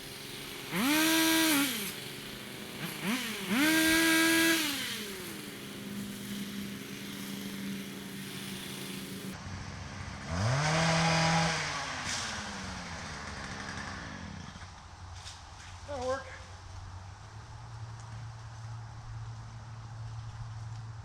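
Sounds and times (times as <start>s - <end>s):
chainsaw revving and idling: 0.0s - 14.8s.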